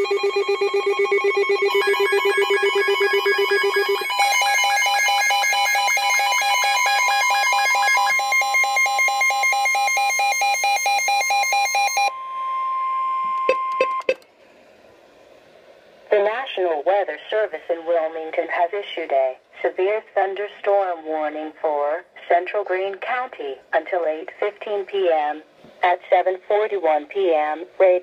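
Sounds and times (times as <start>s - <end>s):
steady alert tone: 0.0s - 8.5s
pulsing electronic alert tones: 0.0s - 14.2s.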